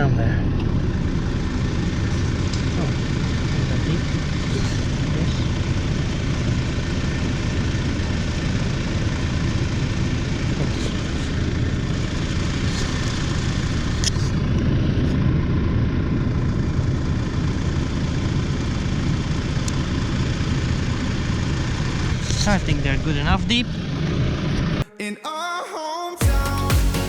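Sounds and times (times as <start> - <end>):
tractor diesel engine idling: 0.0 - 24.8.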